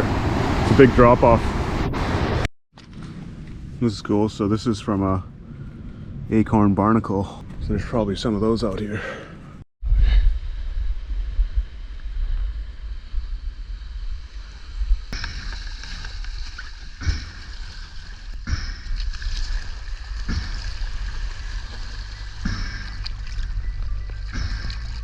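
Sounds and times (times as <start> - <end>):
ocean surf: 0.0 - 2.5
wind rumbling: 0.0 - 25.0
sharp knocks or splashes: 15.1 - 25.0.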